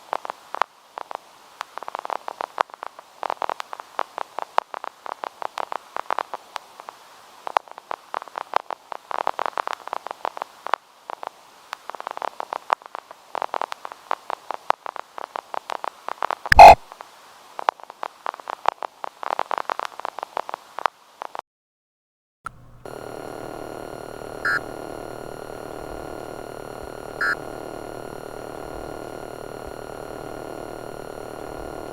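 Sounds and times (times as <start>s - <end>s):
crackling static: 0.0s - 21.4s, 22.5s - 31.9s
short beeps: 16.5s - 16.8s, 27.2s - 27.5s
steady electronic buzzing tone: 16.5s - 16.8s, 22.5s - 31.9s.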